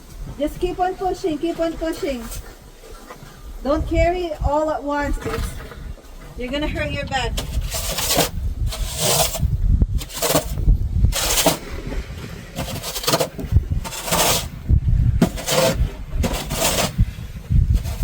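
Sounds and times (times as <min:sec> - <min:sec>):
snow shovel scraping snow: 0:01.0 - 0:02.6, 0:07.3 - 0:18.0.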